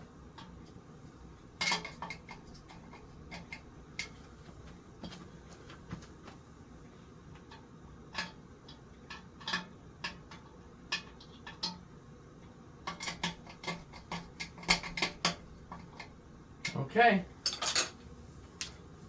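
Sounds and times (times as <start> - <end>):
metal tools clinking: 17.4 - 18.0.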